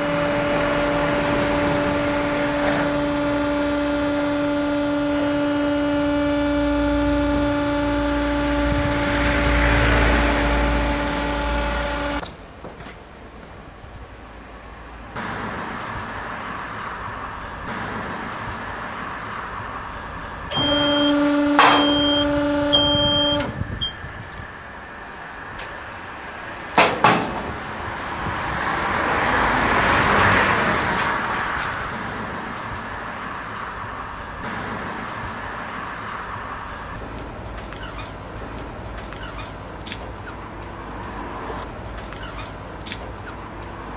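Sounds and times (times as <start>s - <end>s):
baler machine humming: 0.0s - 12.2s, 19.8s - 26.7s
horn-like tone: 0.0s - 12.2s, 20.5s - 25.0s
rush of noise: 22.4s - 37.6s
sharp knocks: 26.8s - 27.6s.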